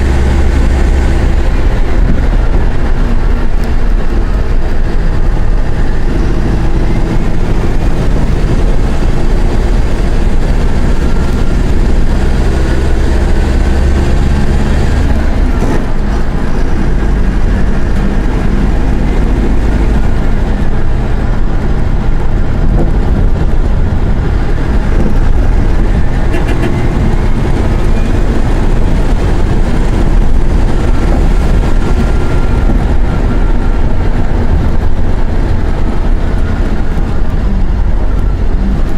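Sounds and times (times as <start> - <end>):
bus diesel engine running hard: 0.0 - 38.9.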